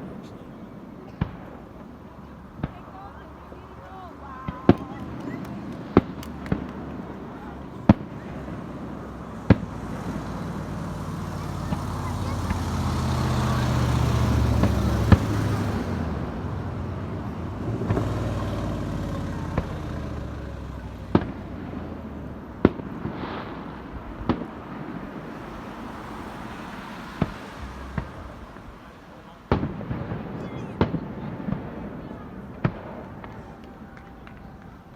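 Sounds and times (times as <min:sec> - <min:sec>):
fireworks bangs: 0:00.0 - 0:34.9
low engine hum: 0:03.3 - 0:34.9.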